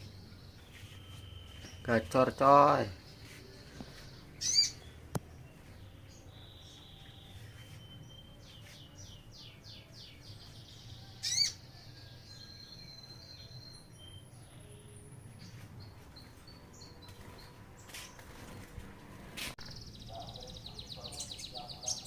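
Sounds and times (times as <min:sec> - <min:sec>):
songbirds chirping and singing: 0:00.0 - 0:22.0.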